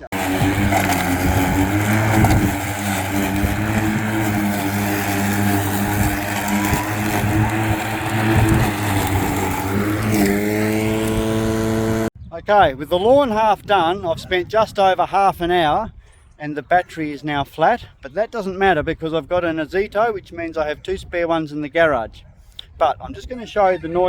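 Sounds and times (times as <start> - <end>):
electric lawn mower cutting grass: 0.0 - 12.1.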